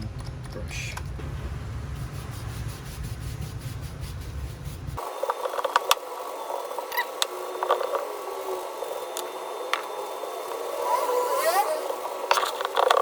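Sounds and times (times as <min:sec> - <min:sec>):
brush scrubbing leather: 0:02.0 - 0:05.0.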